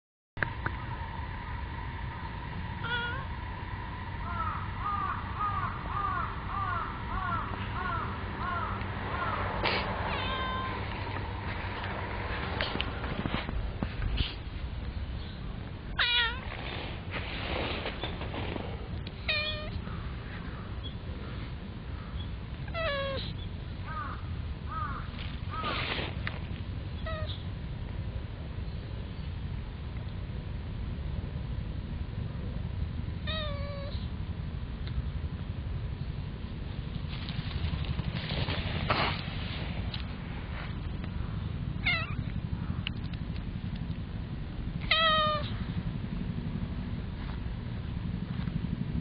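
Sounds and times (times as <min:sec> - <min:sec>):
low background rumble: 0:00.4 - 0:49.0
cat meowing: 0:02.8 - 0:03.3, 0:10.1 - 0:11.1, 0:15.9 - 0:16.5, 0:19.2 - 0:19.8, 0:22.7 - 0:23.4, 0:27.0 - 0:27.4, 0:33.3 - 0:34.0, 0:41.8 - 0:42.2, 0:44.8 - 0:45.6
bird calling: 0:04.2 - 0:09.5, 0:27.0 - 0:27.5
cat sneezing: 0:09.6 - 0:10.1.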